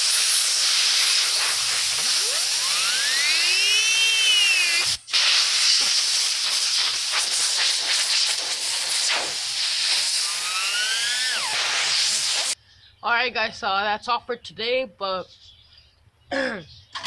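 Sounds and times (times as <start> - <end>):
fidget spinner whirring: 1.2 - 5.1, 10.2 - 11.8
whine rising and falling: 1.3 - 5.1, 10.1 - 12.5.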